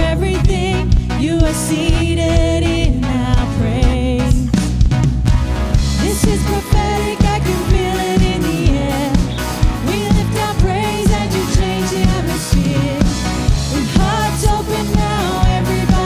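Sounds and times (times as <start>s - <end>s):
bass: 0.0s - 16.0s
drums: 0.0s - 16.0s
keyboards: 0.0s - 16.0s
person singing lead vocals: 5.9s - 16.0s.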